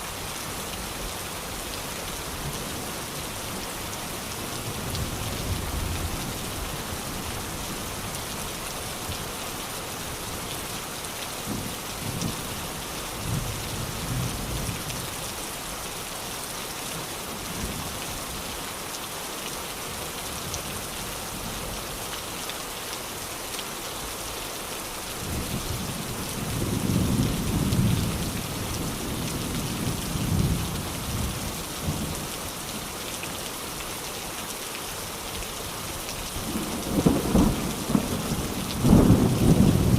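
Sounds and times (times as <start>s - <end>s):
steady rain: 0.0s - 39.9s
thunder rumbling: 36.5s - 39.9s.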